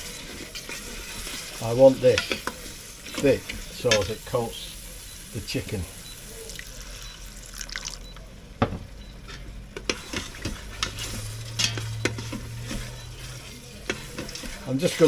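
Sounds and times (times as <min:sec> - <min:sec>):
spoon stirring thick paste: 0:00.0 - 0:04.2, 0:09.3 - 0:15.0
soft sizzle: 0:00.0 - 0:15.0
spoon clinking against pot: 0:09.9 - 0:13.2.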